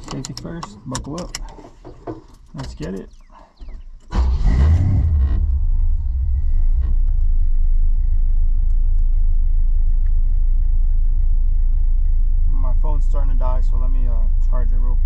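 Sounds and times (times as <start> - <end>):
pickup engine starting and idling: 4.0 - 15.0.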